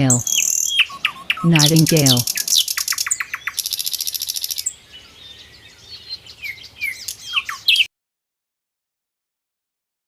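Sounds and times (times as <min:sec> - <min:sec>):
nightingale singing: 0:00.0 - 0:07.9.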